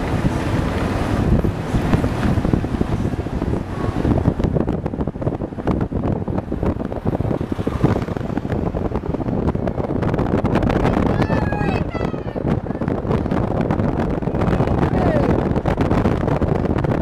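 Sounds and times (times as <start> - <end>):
road rumble: 0.0 - 17.0
wind buffeting microphone: 0.0 - 17.0.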